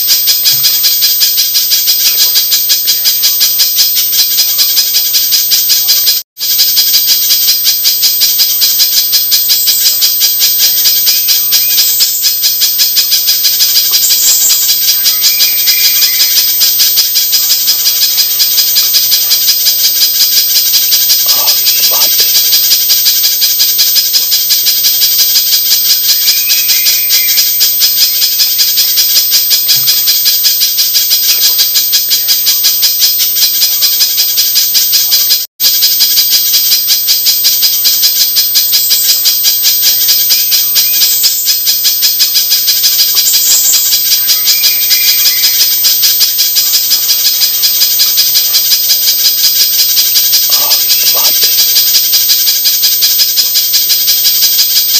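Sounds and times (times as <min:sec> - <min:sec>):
rattling high bird chip notes: 0:00.0 - 0:25.4, 0:26.0 - 0:29.9, 0:42.2 - 0:52.9.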